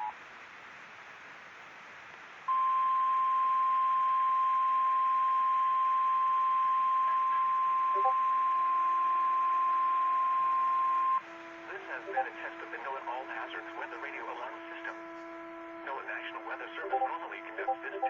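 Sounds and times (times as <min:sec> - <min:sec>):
faint radio hiss: 0:00.0 - 0:18.0
steady loud alert tone: 0:11.9 - 0:12.6.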